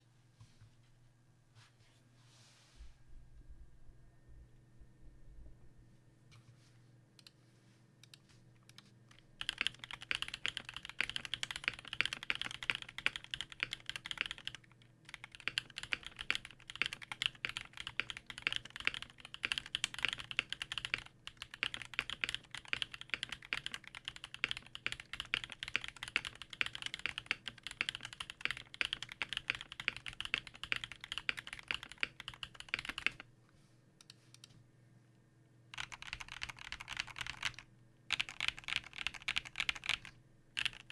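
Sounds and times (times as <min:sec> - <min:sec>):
typing on mechanical keyboard: 0:08.7 - 0:33.3, 0:35.8 - 0:40.9.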